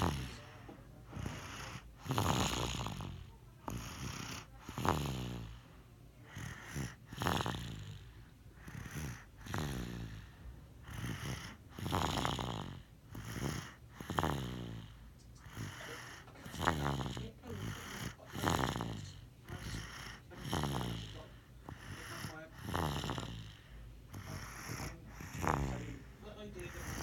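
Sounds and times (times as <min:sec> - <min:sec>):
person snoring: 0:00.0 - 0:05.6, 0:06.3 - 0:27.0.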